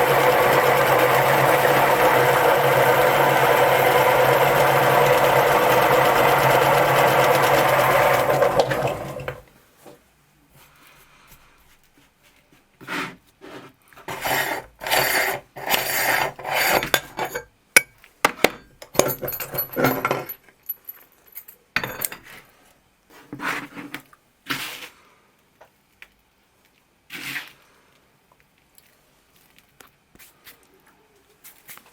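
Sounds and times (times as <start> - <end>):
meat grinder crushing cookies: 0.0 - 9.5, 14.1 - 16.4.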